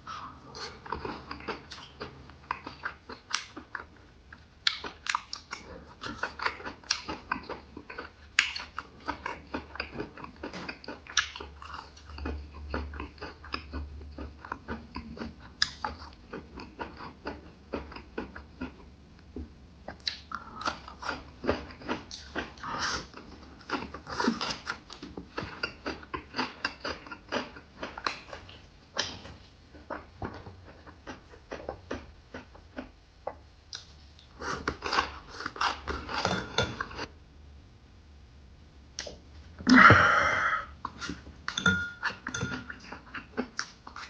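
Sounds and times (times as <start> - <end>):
man chewing food: 0.0 - 37.1, 39.0 - 44.0
faint low hum: 0.0 - 44.0.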